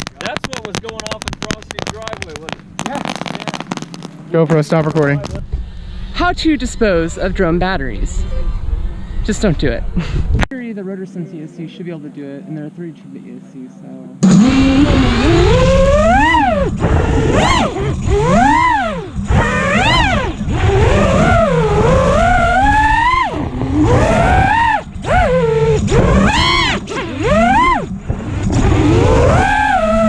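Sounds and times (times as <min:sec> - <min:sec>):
quadcopter motors whining: 0:14.2 - 0:30.0.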